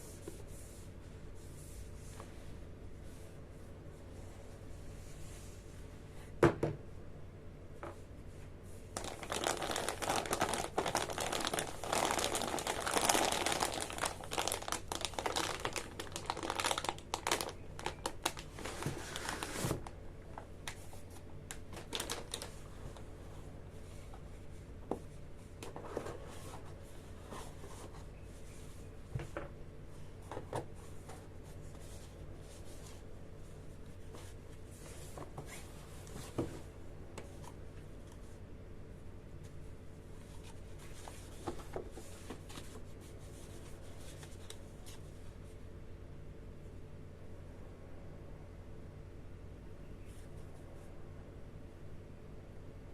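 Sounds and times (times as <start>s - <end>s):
packaging crinkling: 9.0s - 19.9s, 21.5s - 22.7s.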